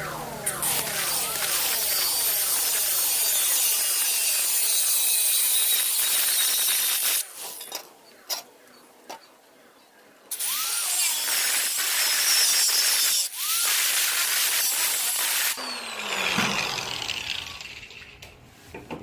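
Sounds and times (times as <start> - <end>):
power tool cutting: 0.0 - 7.3, 10.3 - 18.2.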